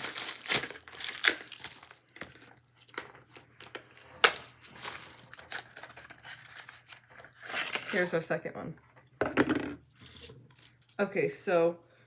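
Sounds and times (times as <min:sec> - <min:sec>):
plastic packaging crinkling: 0:00.0 - 0:08.2.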